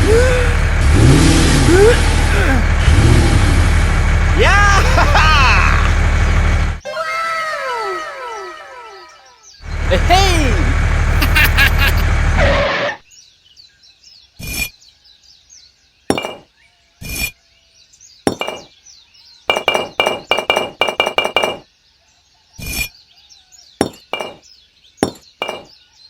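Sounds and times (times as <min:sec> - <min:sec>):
faint bird chirps: 0:06.9 - 0:09.8, 0:13.0 - 0:20.1, 0:21.2 - 0:26.0
hard objects clinking: 0:25.0 - 0:25.7.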